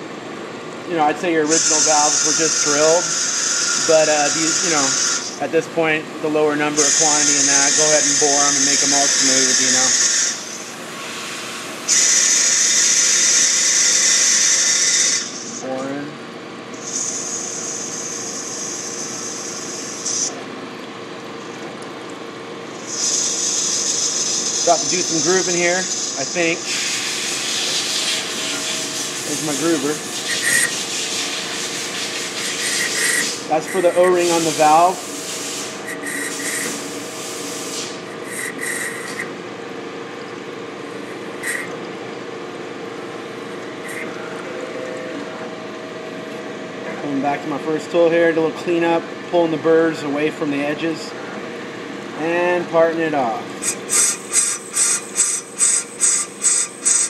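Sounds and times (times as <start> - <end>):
lathe machine hum: 1.4 - 20.5, 22.6 - 47.8
high-pitched cutting squeals: 1.5 - 5.4, 6.8 - 10.6, 11.9 - 15.6, 16.8 - 20.3, 27.6 - 31.3, 32.4 - 35.0, 35.7 - 36.7, 37.8 - 39.3, 41.0 - 41.7.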